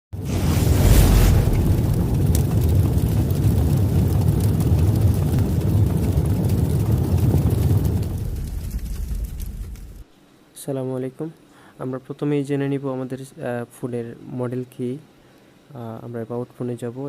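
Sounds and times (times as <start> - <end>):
loud low rumble: 0.2 - 10.0.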